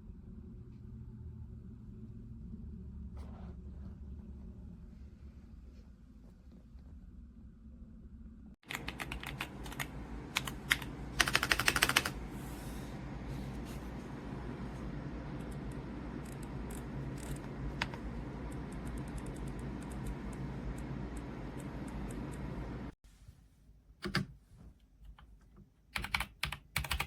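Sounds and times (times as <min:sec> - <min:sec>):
steady low hum: 0:00.0 - 0:23.3
mechanical keyboard typing: 0:08.6 - 0:12.2, 0:15.4 - 0:22.5, 0:25.9 - 0:27.0.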